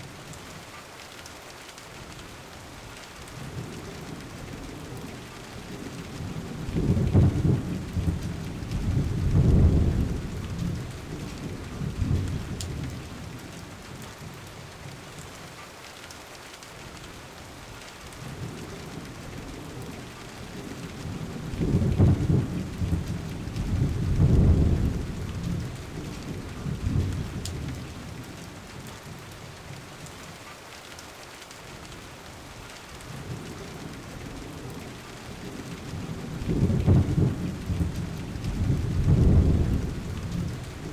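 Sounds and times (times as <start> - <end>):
steady rain: 0.0 - 40.9
thunder rumbling: 6.2 - 13.3, 19.5 - 28.2, 34.2 - 40.9.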